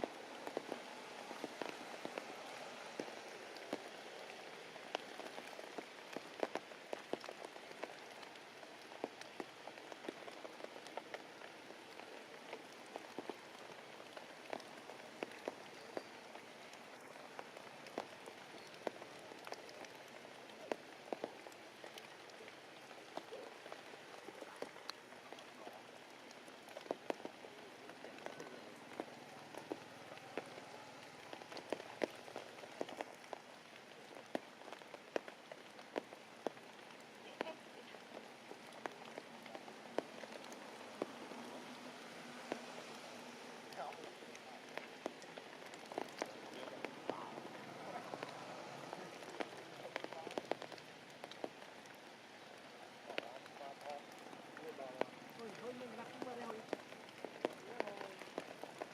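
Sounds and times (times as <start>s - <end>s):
rain falling: 0.0s - 58.9s.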